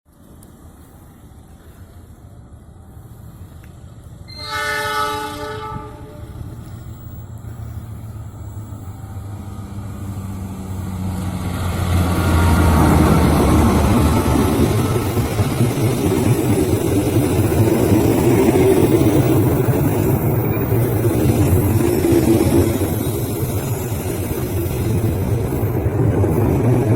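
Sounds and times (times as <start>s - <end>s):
locomotive engine drone: 0.1s - 26.9s
train horn blast: 4.3s - 6.4s.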